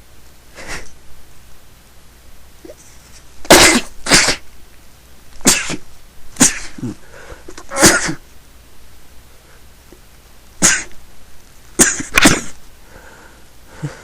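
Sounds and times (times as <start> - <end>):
person sneezing: 2.6 - 4.4, 5.4 - 8.2, 10.6 - 11.0, 11.8 - 12.6.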